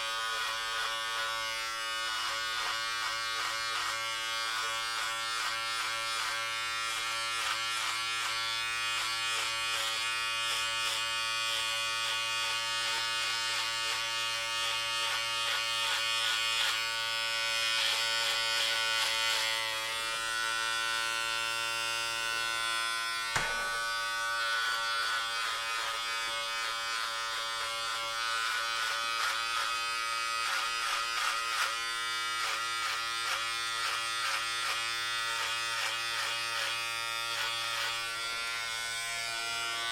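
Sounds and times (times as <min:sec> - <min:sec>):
electric hair clippers buzzing: 0:00.0 - 0:39.9
sharp click: 0:23.3 - 0:23.8.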